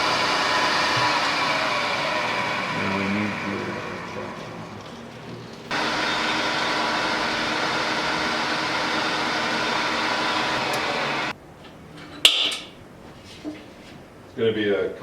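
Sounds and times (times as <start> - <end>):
power tool whirring: 0.0 - 4.8, 5.7 - 11.3.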